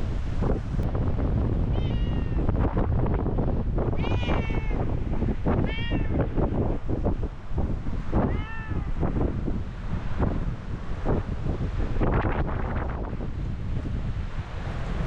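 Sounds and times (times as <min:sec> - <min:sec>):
wind buffeting microphone: 0:00.0 - 0:15.0
cat meowing: 0:01.7 - 0:02.5, 0:04.0 - 0:04.8, 0:05.6 - 0:06.3, 0:08.2 - 0:09.0.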